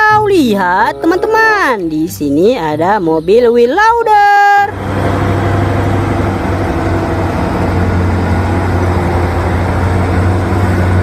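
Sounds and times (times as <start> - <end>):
heavy vehicle engine running: 4.2 - 11.0.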